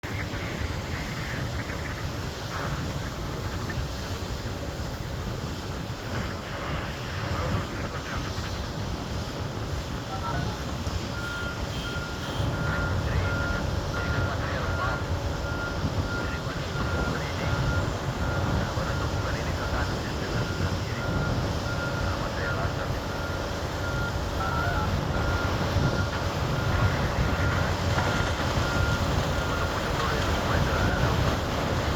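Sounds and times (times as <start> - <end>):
heavy diesel machinery rumble: 0.0 - 31.9
reversing alarm beeping: 11.0 - 31.8.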